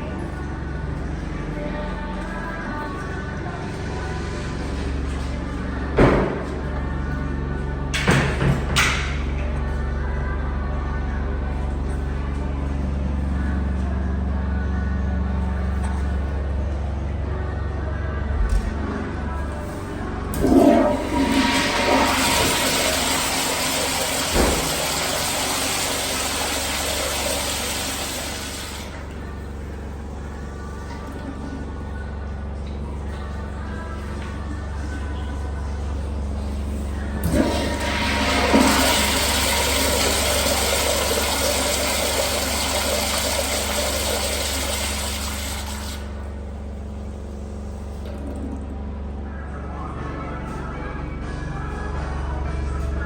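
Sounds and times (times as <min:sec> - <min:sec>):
low hum: 0:09.3 - 0:42.5
toilet flushing: 0:20.3 - 0:29.8, 0:37.1 - 0:46.4.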